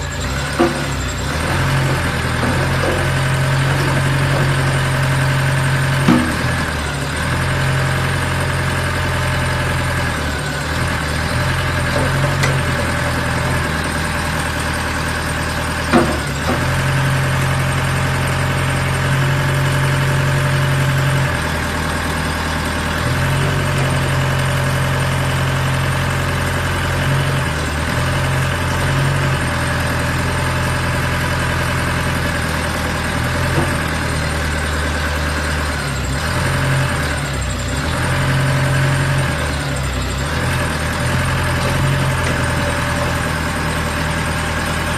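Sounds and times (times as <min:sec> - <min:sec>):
diesel engine humming: 0:00.0 - 0:44.9.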